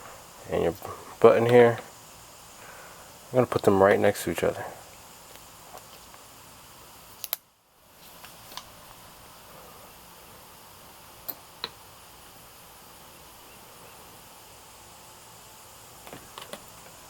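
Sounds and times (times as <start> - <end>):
steady low hiss: 0.0 - 17.0.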